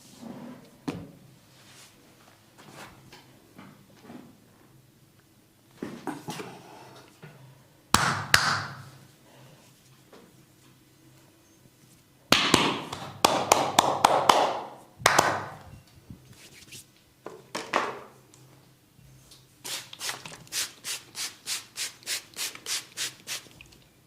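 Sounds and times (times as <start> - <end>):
hands rubbing skin and hair: 16.2 - 17.0.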